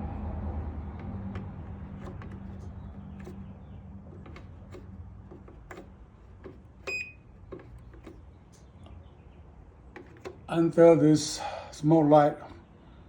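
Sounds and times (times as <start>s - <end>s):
small clicks and handling noise: 0.9s - 9.0s, 9.9s - 10.5s.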